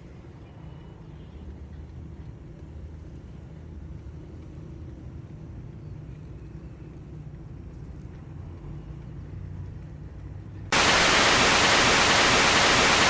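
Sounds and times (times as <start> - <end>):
loud hissing static: 10.7 - 13.0.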